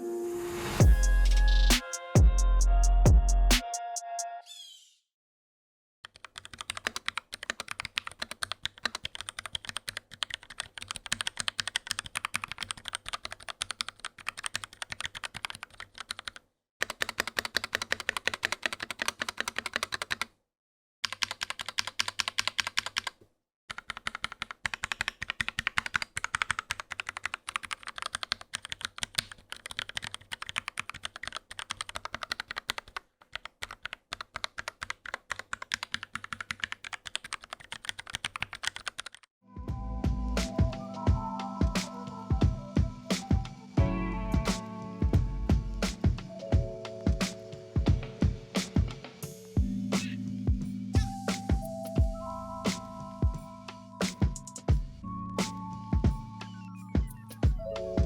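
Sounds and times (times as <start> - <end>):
mechanical keyboard typing: 6.1 - 20.3, 21.0 - 39.3.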